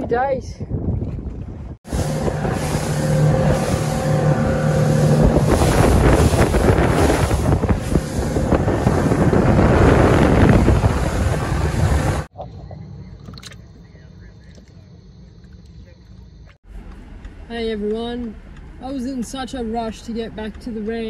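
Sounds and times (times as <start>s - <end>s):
wind buffeting microphone: 0.0s - 12.3s
boat motor droning: 1.8s - 21.0s.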